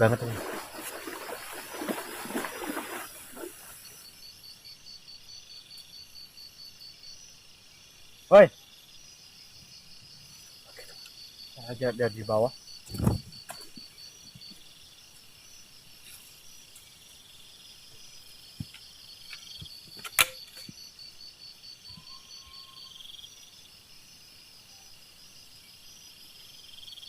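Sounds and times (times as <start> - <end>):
night insects chirping: 0.0 - 27.0
sharp click: 20.0 - 20.7.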